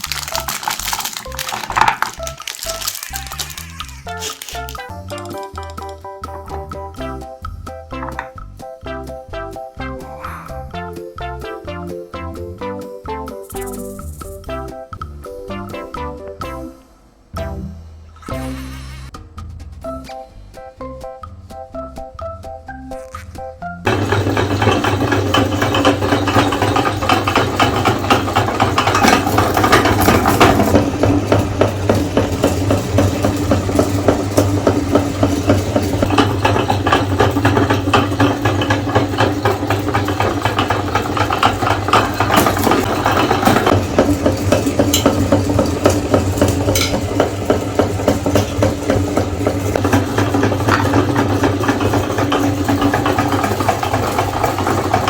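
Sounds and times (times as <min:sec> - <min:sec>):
electric meat grinder running: 0:23.9 - 0:55.0.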